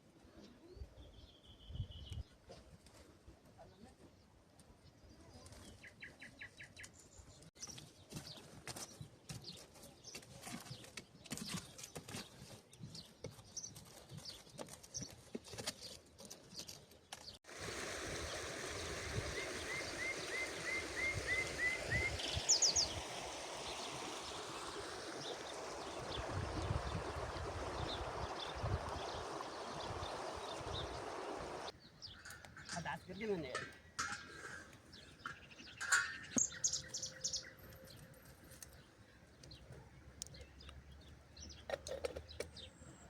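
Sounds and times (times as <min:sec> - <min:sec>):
birds calling: 0:18.2 - 0:43.0
bird chirps: 0:19.4 - 0:39.6.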